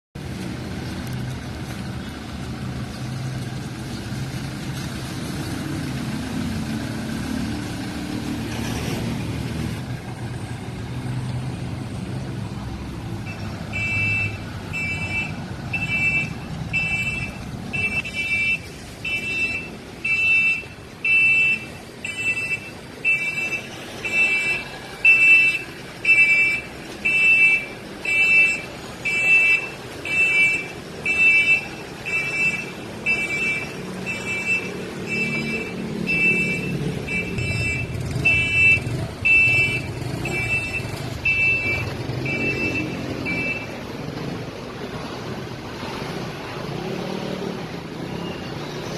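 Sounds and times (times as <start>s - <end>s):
high-pitched reversing beeps: 13.2s - 43.8s.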